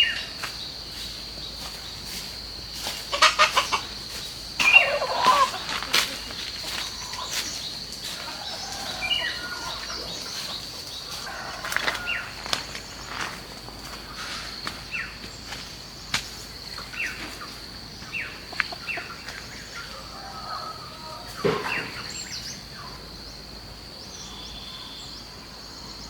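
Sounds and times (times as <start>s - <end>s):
high insect drone: 0.0s - 26.0s
chickens clucking and squawking: 1.0s - 15.0s, 16.4s - 23.2s.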